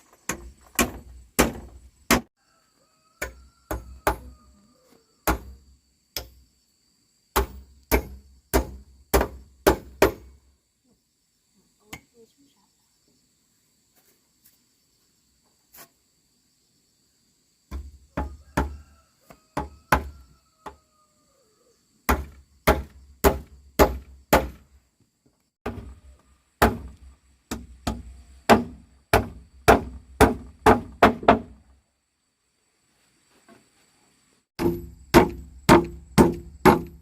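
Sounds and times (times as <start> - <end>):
hand tool striking wood: 0.2 - 2.3, 3.2 - 4.3, 5.2 - 5.6, 6.2 - 6.4, 7.4 - 10.3, 22.1 - 24.6, 25.6 - 26.0, 26.6 - 31.6, 34.6 - 37.0.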